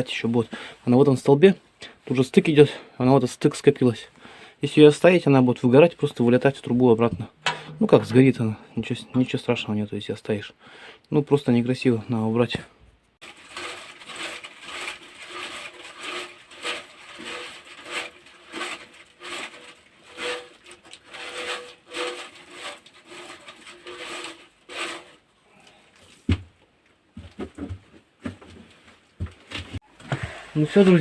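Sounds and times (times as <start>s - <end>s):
broom brushing soot in pipe: 13.2s - 25.2s.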